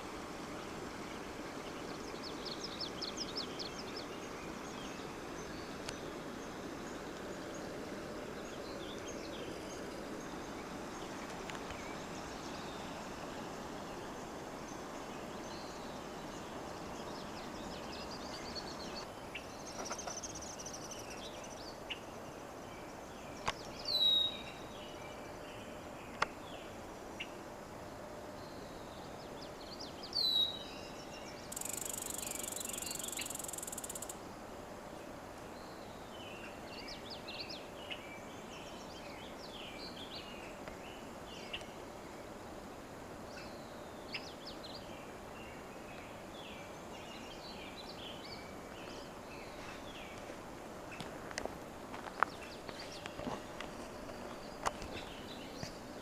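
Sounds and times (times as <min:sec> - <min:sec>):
natural background hiss: 0:00.0 - 0:56.0
bird calls: 0:17.0 - 0:22.0, 0:31.5 - 0:34.2
high insect-like buzz: 0:31.5 - 0:34.2.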